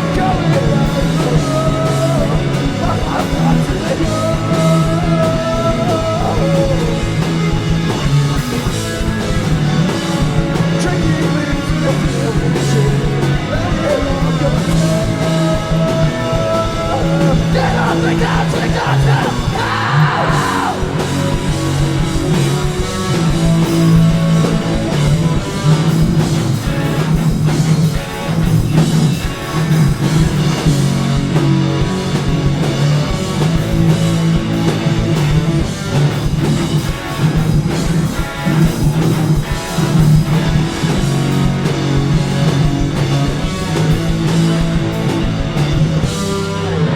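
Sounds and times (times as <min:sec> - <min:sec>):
person singing: 0:00.0 - 0:07.2, 0:10.7 - 0:21.2
rock band playing live: 0:00.0 - 0:46.9.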